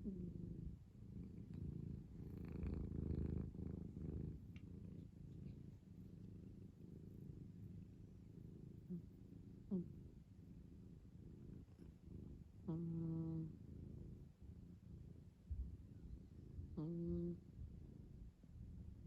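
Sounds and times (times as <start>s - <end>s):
cat snoring: 0.0s - 4.4s, 8.8s - 10.0s, 11.6s - 13.9s, 16.7s - 17.4s.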